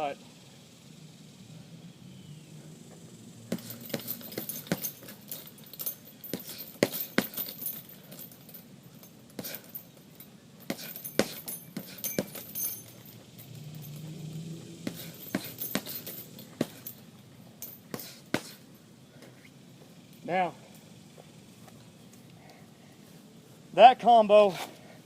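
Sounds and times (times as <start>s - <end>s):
gloves hitting punching bag: 3.5s - 5.2s, 6.2s - 7.7s, 10.6s - 12.6s, 14.8s - 17.0s, 17.9s - 18.6s.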